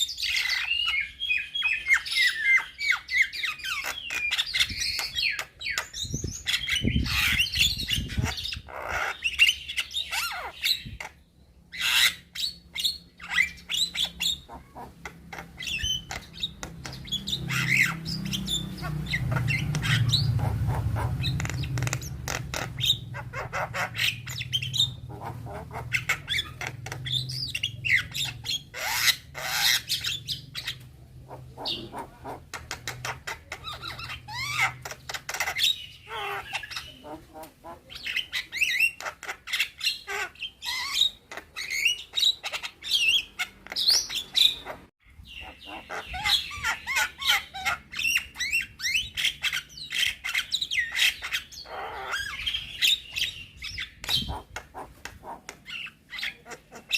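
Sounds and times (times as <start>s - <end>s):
myna singing whistles and squawks: 45.4s - 56.9s.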